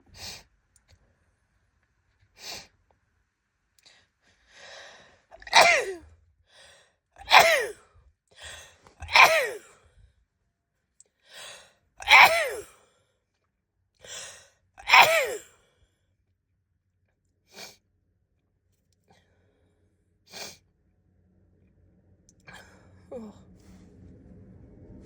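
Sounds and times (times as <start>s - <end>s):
woman sneezing: 5.4s - 6.0s, 7.2s - 7.8s, 9.0s - 9.7s, 12.0s - 12.7s, 14.8s - 15.5s.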